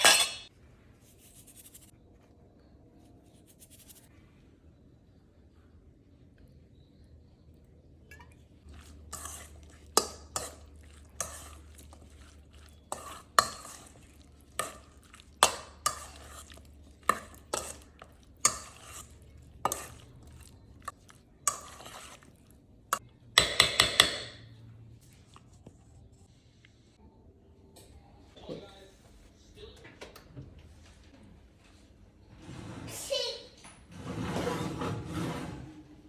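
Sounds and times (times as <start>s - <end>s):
utensil scraping pot: 8.6s - 24.4s.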